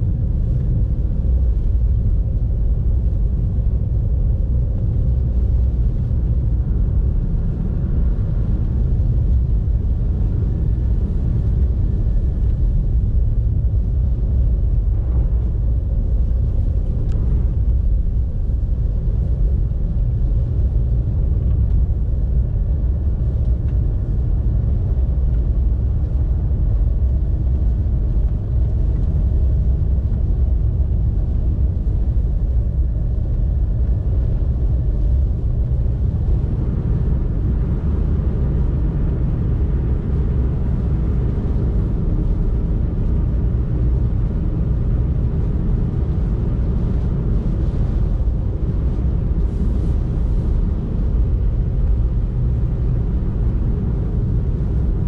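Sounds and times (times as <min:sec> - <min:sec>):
car driving on snowy road: 0:00.0 - 0:55.0.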